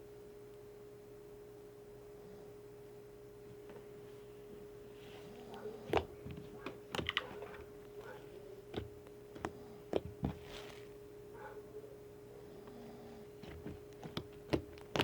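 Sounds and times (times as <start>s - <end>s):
faint humming tone: 0.0s - 15.0s
slime squished by hand: 13.4s - 15.0s.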